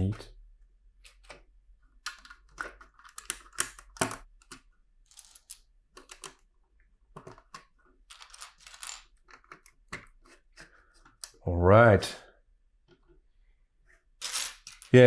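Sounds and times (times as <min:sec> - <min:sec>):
plastic bricks clicking and clattering: 0:02.0 - 0:06.5, 0:07.1 - 0:10.2.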